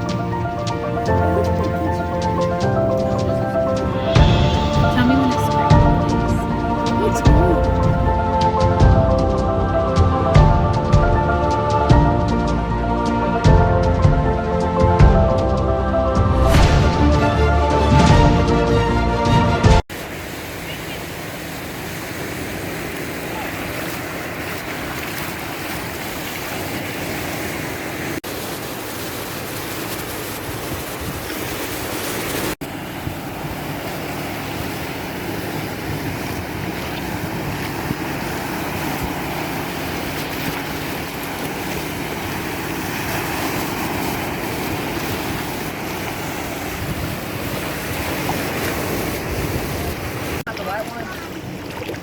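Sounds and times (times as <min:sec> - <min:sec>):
ocean surf washing: 0:00.0 - 0:52.0
wind buffeting microphone: 0:30.3 - 0:52.0.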